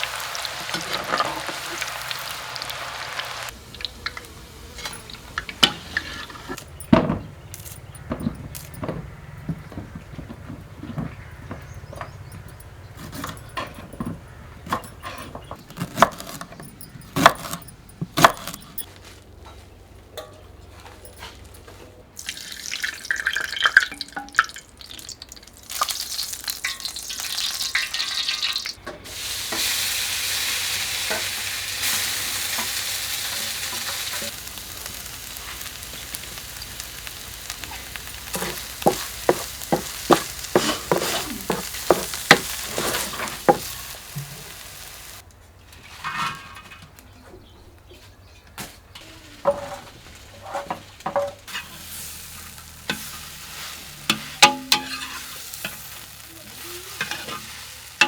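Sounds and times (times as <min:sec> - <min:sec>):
spoon knocking and scraping pan: 0:00.0 - 0:02.8, 0:03.6 - 0:18.8, 0:31.0 - 0:34.4, 0:35.0 - 0:44.6, 0:49.4 - 0:51.8, 0:52.9 - 0:55.9, 0:56.9 - 0:57.6
food sizzling in hot oil: 0:00.0 - 0:06.6, 0:22.2 - 0:45.2, 0:49.5 - 0:58.0.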